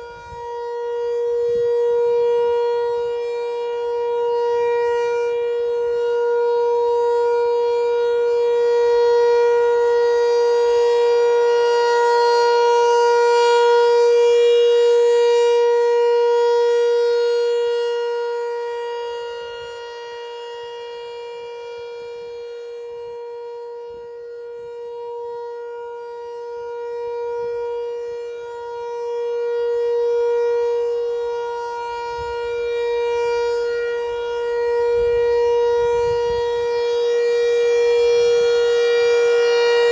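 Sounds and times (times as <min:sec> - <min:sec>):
warning siren steady tone: 0:00.0 - 0:39.9.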